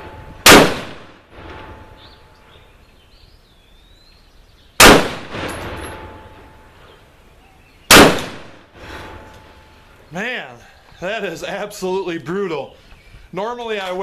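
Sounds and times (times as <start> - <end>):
rifle shots with echo: 0.0 - 2.3, 4.8 - 6.6, 7.9 - 8.8.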